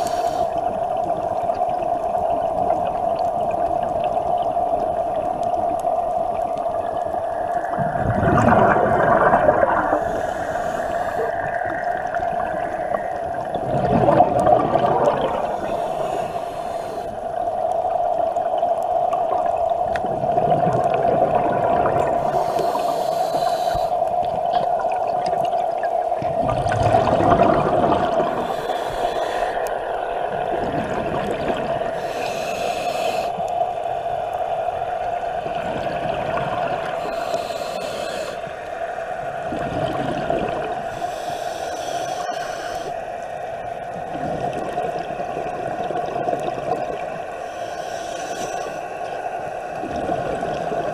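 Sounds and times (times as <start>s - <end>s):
hissing regulator inhalations: 0.0s - 0.6s, 9.7s - 11.4s, 15.3s - 17.4s, 22.2s - 24.2s, 28.2s - 29.8s, 31.9s - 33.6s, 36.8s - 38.7s, 40.8s - 43.2s, 47.2s - 49.8s
gurgling exhaled bubbles: 0.0s - 38.6s, 39.2s - 41.2s, 43.7s - 50.9s.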